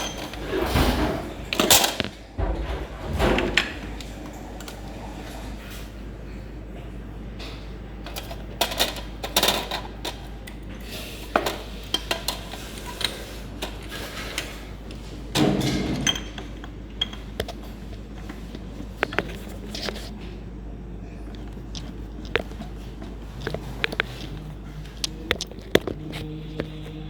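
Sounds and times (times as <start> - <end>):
metal clatter: 0.0 - 4.8.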